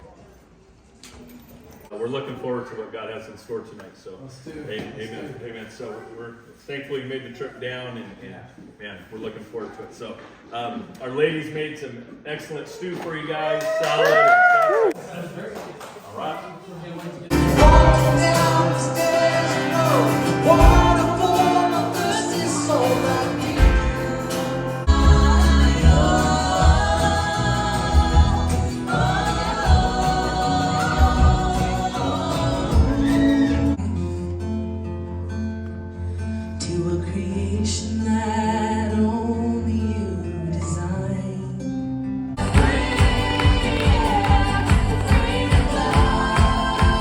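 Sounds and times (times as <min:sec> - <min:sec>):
low bass notes: 0:17.3 - 0:22.1, 0:23.0 - 0:33.8, 0:42.4 - 0:47.0
band with a beat: 0:17.3 - 0:33.5, 0:42.4 - 0:47.0
person singing: 0:17.3 - 0:34.2, 0:42.4 - 0:47.0
instrumental backing music: 0:17.3 - 0:36.0, 0:42.4 - 0:47.0
guitar: 0:17.3 - 0:47.0.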